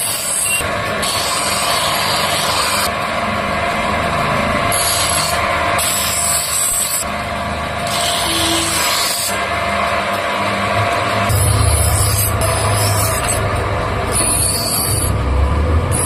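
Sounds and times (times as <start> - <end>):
metal grinding scissor blade: 0.0 - 3.0, 4.6 - 7.2, 7.8 - 9.5, 11.0 - 15.2.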